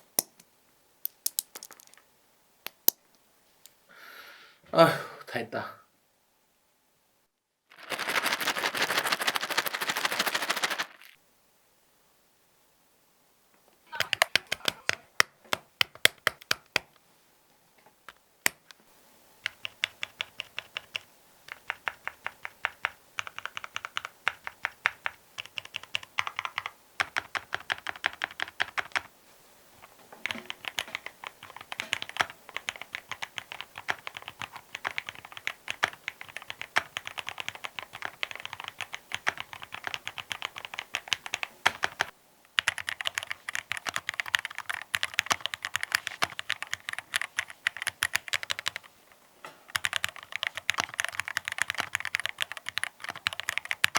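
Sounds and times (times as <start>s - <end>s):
mechanical keyboard typing: 13.9s - 17.0s, 19.4s - 29.1s, 30.2s - 48.9s, 49.7s - 53.9s.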